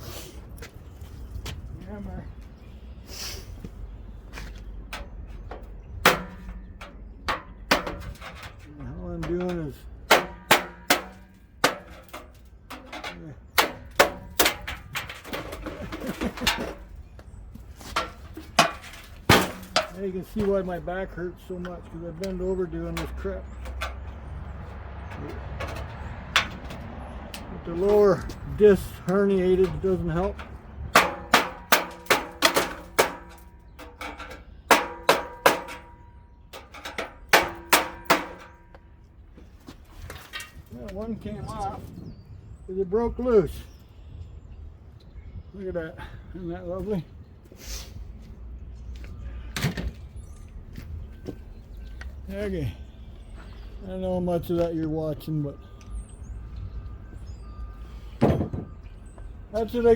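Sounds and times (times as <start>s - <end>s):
hammer striking metal part: 6.0s - 8.1s, 10.0s - 15.2s, 29.6s - 38.8s
hammer striking metal: 10.1s - 12.3s.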